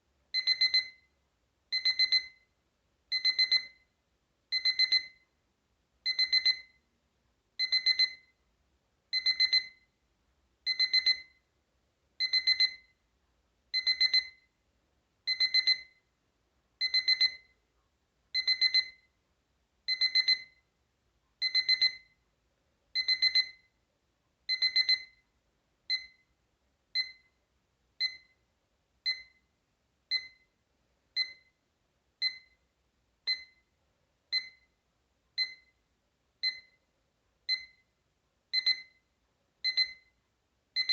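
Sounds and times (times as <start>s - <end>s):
alarm clock beeping: 0.4s - 1.1s, 1.8s - 2.5s, 3.1s - 3.9s, 4.5s - 5.2s, 6.1s - 6.8s, 7.6s - 8.4s, 9.2s - 9.8s, 10.7s - 11.4s, 12.2s - 13.0s, 13.8s - 14.5s, 15.3s - 16.0s, 16.8s - 17.6s, 18.4s - 19.1s, 19.9s - 20.6s, 21.4s - 22.2s, 23.0s - 23.7s, 24.5s - 25.2s, 25.9s - 26.3s, 27.0s - 27.3s, 28.0s - 28.4s, 29.1s - 29.4s, 30.1s - 30.5s, 31.2s - 31.6s, 32.2s - 32.6s, 33.3s - 33.7s, 34.3s - 34.7s, 35.4s - 35.8s, 36.4s - 36.8s, 37.5s - 37.9s, 38.5s - 39.0s, 39.6s - 40.2s.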